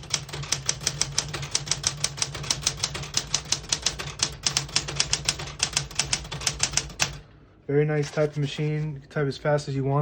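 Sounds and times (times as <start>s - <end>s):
manual typewriter typing: 0.0s - 7.2s.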